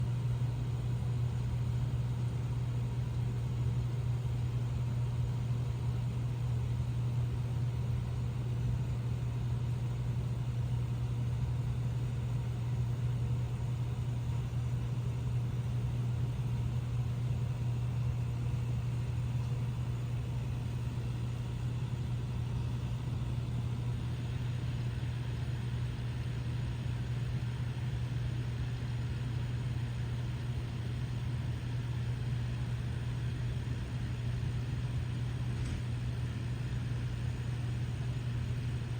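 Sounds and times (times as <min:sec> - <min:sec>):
steady low hum: 0:11.9 - 0:38.9.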